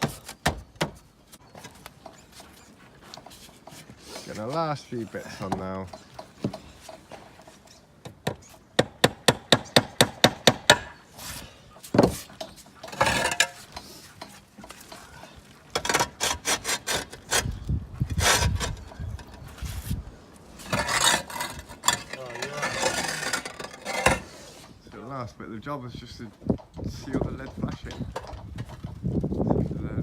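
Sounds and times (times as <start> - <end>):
scraping: 11.1 - 24.8.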